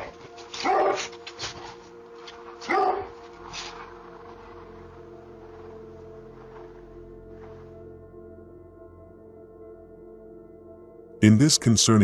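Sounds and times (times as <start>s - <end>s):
dog barking: 0.0s - 1.5s, 2.6s - 3.8s
steady low drone: 0.0s - 12.0s.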